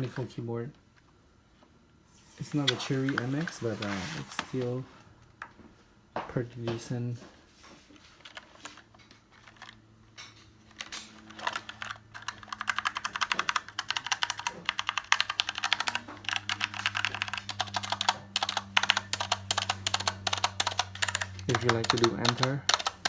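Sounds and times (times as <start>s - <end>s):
low steady hum: 0.0s - 23.0s
mechanical keyboard key clicks: 11.4s - 23.0s.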